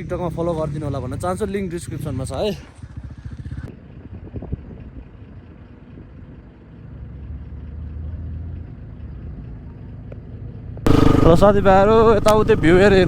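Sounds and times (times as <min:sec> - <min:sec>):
vehicle engine idling: 0:04.8 - 0:13.0.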